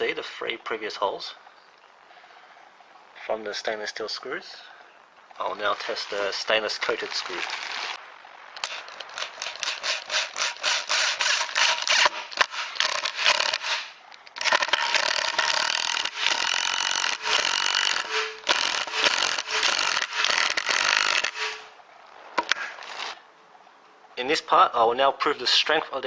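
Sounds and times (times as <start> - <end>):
power driver driving screw into wood: 8.6 - 21.7.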